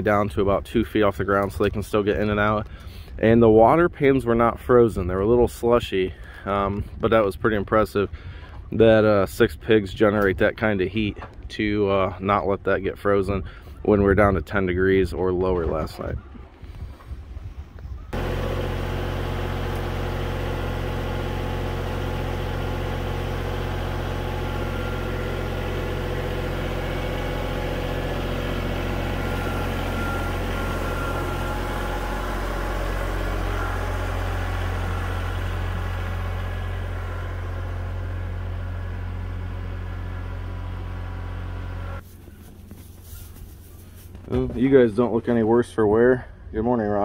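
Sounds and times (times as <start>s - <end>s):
vehicle engine running: 18.1s - 45.3s.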